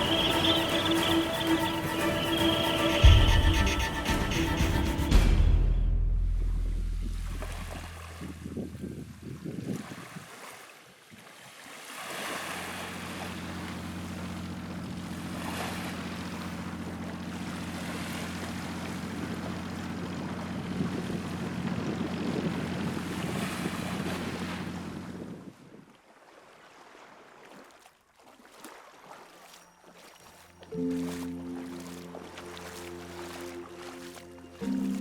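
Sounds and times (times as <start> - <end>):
boat engine running: 0.0 - 9.8, 12.3 - 25.5, 29.4 - 35.0
water noise: 0.0 - 35.0
wind: 0.0 - 35.0.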